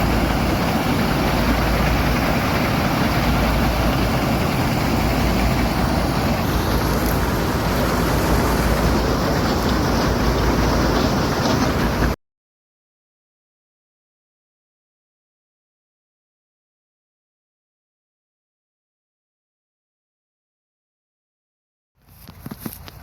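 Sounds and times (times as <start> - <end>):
harvesting machinery running: 0.0 - 12.2.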